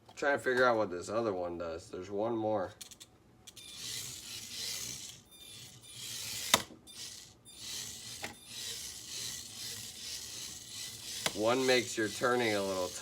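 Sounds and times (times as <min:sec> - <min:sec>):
toy car motor whirring: 0:02.9 - 0:13.0.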